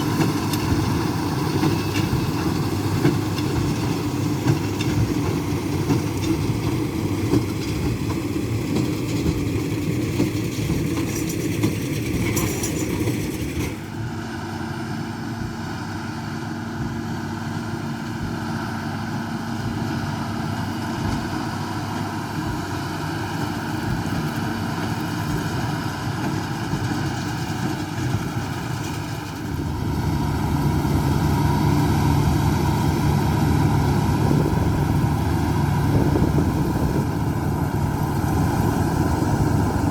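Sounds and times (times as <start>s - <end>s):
diesel engines running: 0.0s - 39.9s
deep engine hum: 29.4s - 39.9s.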